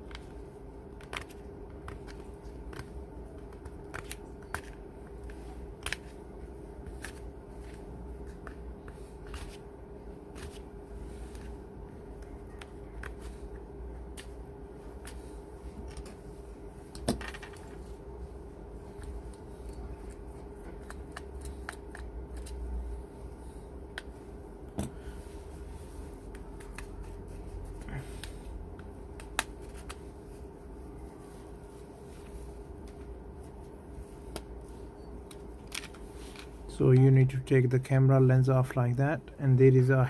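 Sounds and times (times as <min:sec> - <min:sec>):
faint steady hum: 0:00.0 - 0:40.0
tools clicking on phone parts: 0:19.0 - 0:22.6.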